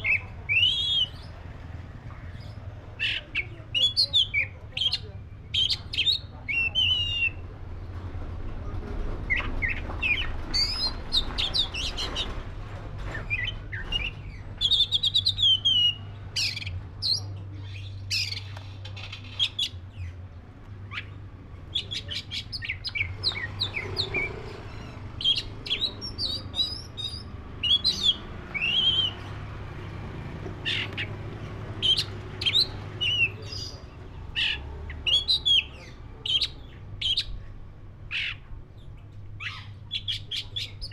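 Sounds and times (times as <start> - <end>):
bird singing whistled notes: 25.2 - 29.3.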